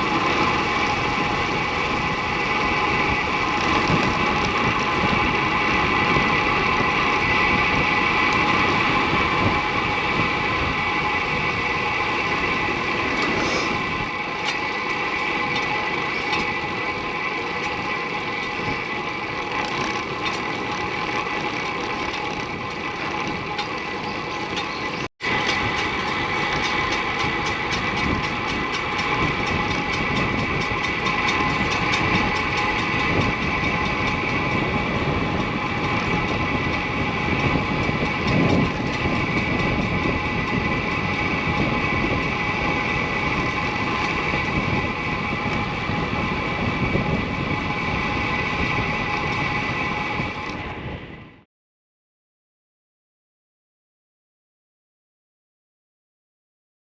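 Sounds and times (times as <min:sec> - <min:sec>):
road and wind noise: 0:00.0 - 0:51.4
bicycle disc brake squealing: 0:12.3 - 0:47.0.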